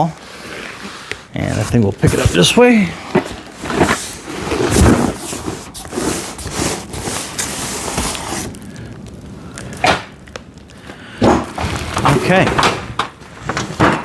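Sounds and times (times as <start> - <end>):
cardboard scraping and rustling: 0.0 - 8.6, 11.4 - 14.0.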